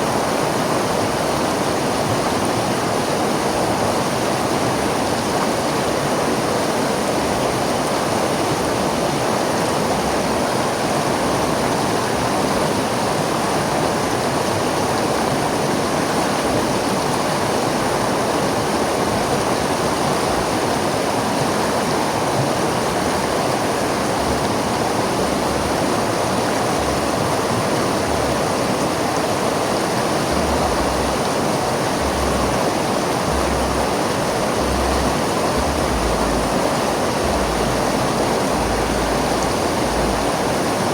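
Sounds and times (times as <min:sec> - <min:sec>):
river water rushing: 0:00.0 - 0:40.9.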